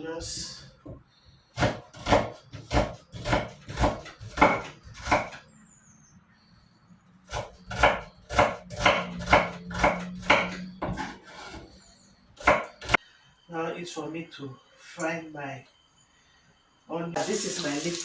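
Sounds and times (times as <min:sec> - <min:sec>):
knife chopping onions on board: 0:01.6 - 0:05.4, 0:07.3 - 0:11.6, 0:12.4 - 0:13.0.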